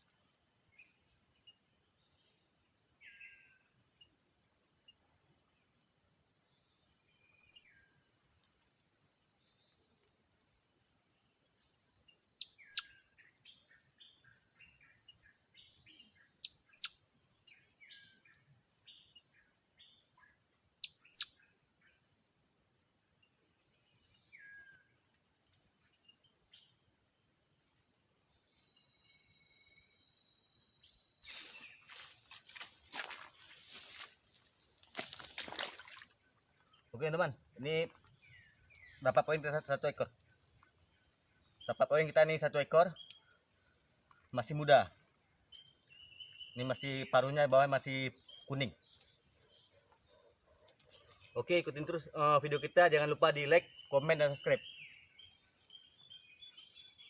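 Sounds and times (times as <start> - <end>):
insects droning: 0.0 - 57.0.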